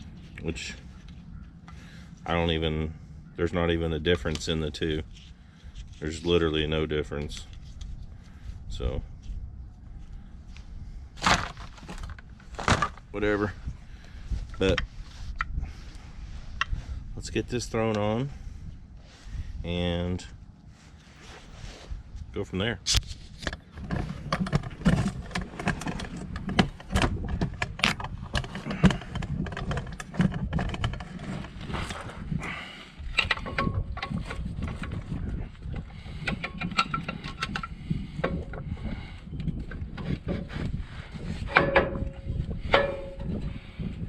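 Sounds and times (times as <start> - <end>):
metal brake parts clinking: 41.5 - 43.3
struck metal ringing: 41.5 - 43.5.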